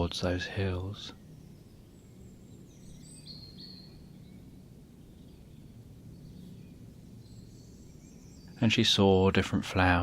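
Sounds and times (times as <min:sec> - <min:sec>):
distant bird chirps: 0:00.0 - 0:10.0
low steady rumble: 0:00.0 - 0:10.0.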